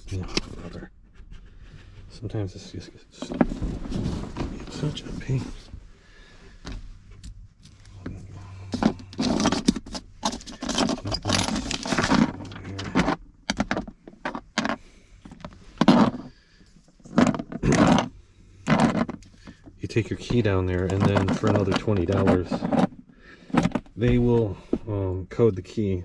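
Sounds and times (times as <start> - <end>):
small metal parts clinking: 8.8 - 13.7.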